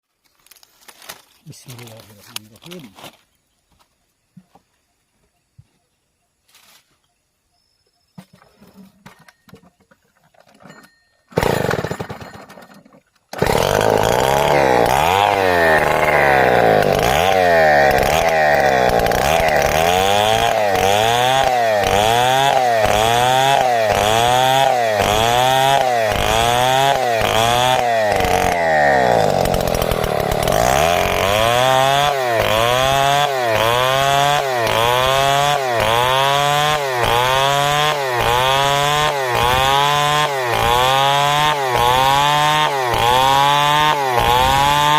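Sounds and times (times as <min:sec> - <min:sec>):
chainsaw cutting timber: 0:11.3 - 0:44.9.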